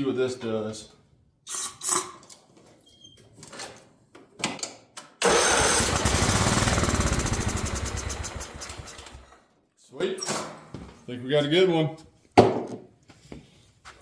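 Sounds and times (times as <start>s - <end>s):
riding mower engine running: 5.2s - 9.4s.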